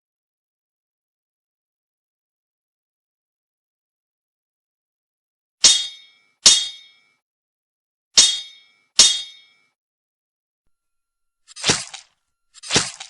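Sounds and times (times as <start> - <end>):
metallic clangs with ringing tail: 5.6 - 7.2, 8.2 - 9.7.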